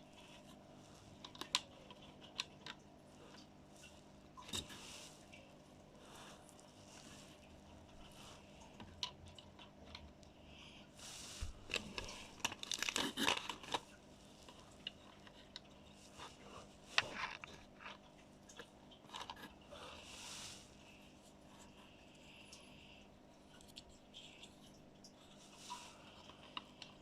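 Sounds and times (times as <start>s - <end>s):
packaging rustling and crinkling: 11.1s - 18.0s.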